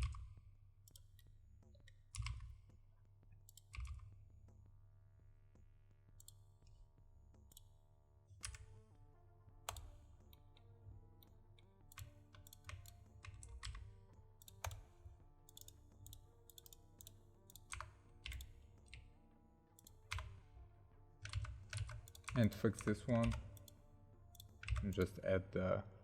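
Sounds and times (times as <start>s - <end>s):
faint background music: 0.0s - 26.0s
computer keyboard keys clicking: 0.9s - 1.2s, 1.9s - 2.5s, 3.5s - 4.1s, 9.7s - 10.5s, 11.9s - 14.9s, 15.5s - 19.1s, 19.8s - 20.4s, 21.2s - 25.1s.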